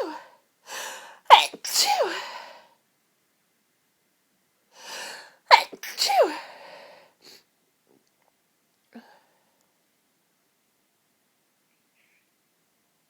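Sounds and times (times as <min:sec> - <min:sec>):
breathy in-breath: 0:00.2 - 0:01.2, 0:04.8 - 0:05.4, 0:06.4 - 0:07.4
woman sneezing: 0:01.3 - 0:02.4, 0:05.5 - 0:06.6.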